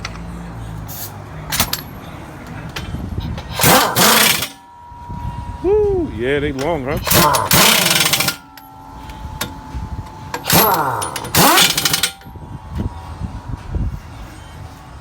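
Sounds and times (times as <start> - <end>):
pneumatic impact wrench: 0.9 - 1.9, 3.4 - 4.7, 7.0 - 8.6, 10.3 - 12.3.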